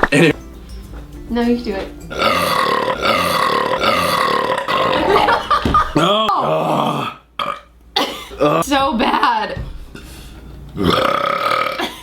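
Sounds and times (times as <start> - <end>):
man burping: 2.1 - 5.3, 6.0 - 7.7, 8.3 - 8.6, 10.8 - 12.0.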